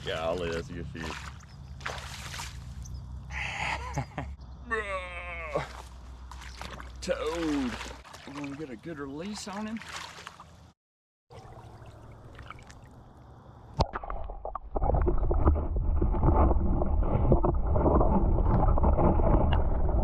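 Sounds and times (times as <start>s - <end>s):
water churning and sloshing: 0.0s - 2.9s, 5.6s - 13.2s.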